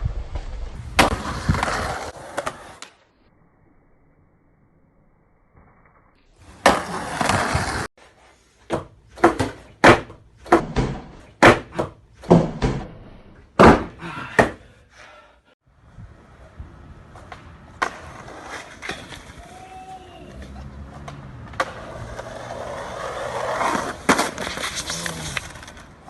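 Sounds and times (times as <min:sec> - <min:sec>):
sharp knocks and bangs: 0:08.7 - 0:14.6.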